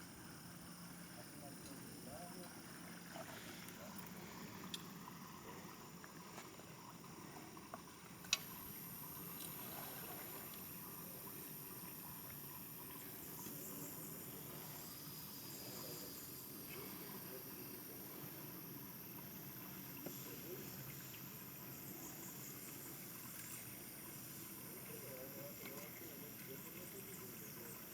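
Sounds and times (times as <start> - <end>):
high-pitched insect drone: 0.0 - 8.0, 8.6 - 27.9
faint ticks: 3.6 - 5.0, 7.6 - 9.6.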